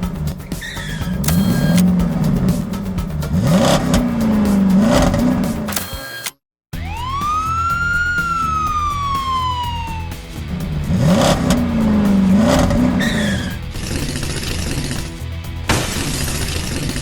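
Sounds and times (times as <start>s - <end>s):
music with low beat: 0.0s - 6.1s, 6.8s - 17.0s
engine-rev sound effect: 0.0s - 17.0s
siren-like wail: 6.8s - 10.4s
hiss: 12.8s - 17.0s.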